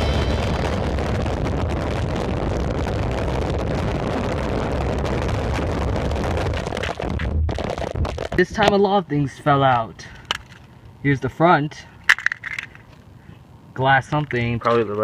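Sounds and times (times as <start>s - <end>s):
wind buffeting microphone: 0.0s - 8.8s.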